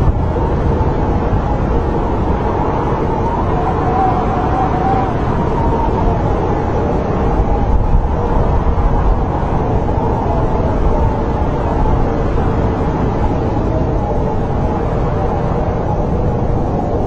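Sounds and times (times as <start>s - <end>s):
wind low rumble: 0.0s - 17.0s.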